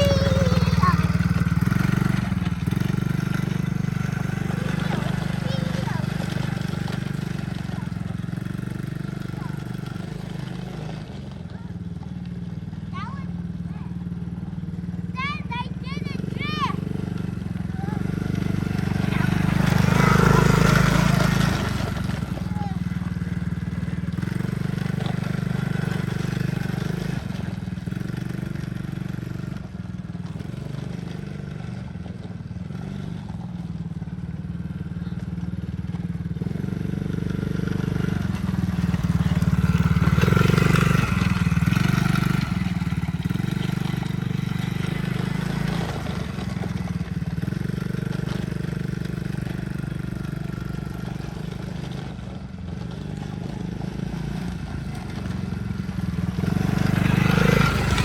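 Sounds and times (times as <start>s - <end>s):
quad bike engine running: 0.0s - 58.0s.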